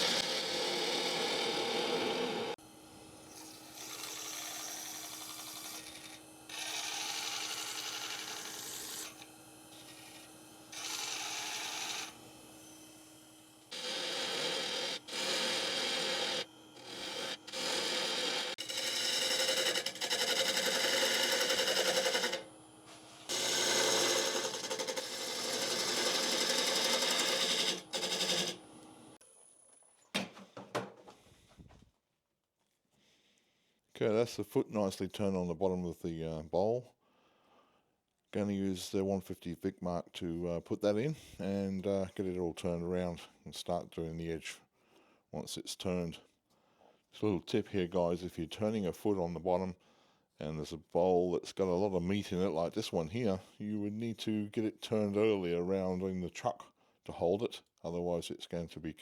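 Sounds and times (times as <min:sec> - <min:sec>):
lathe motor hum: 0:00.0 - 0:29.2
lathe tool scraping wood: 0:00.0 - 0:29.2.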